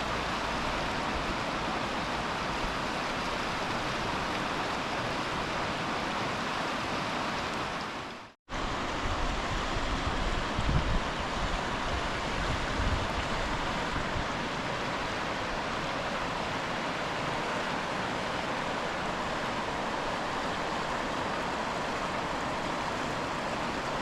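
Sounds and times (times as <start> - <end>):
river water rushing: 0.0 - 24.0
wind on microphone: 8.6 - 15.7.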